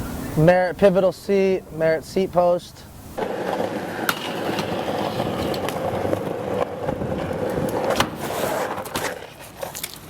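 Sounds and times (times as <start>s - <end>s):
bike tyres rumbling on pavement: 3.2s - 10.0s.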